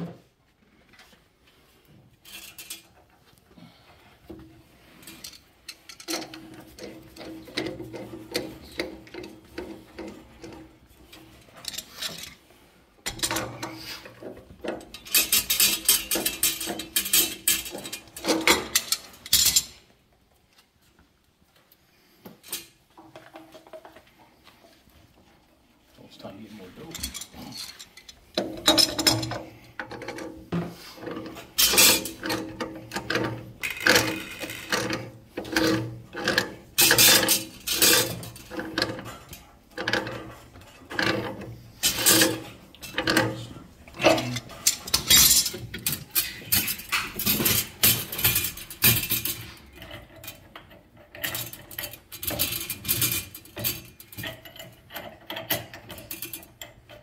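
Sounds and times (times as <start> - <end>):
metal fittings clinking and rasping: 4.8 - 12.4, 13.1 - 19.8, 26.8 - 57.0.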